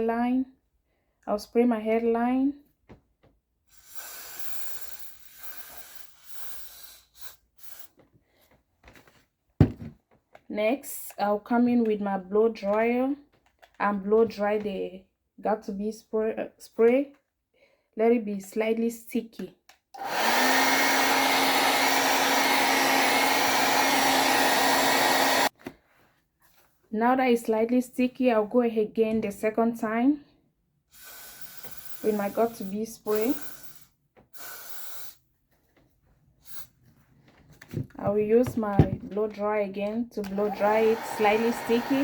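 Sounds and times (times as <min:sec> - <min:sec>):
aerosol hair spray hissing: 0:40.6 - 0:42.0.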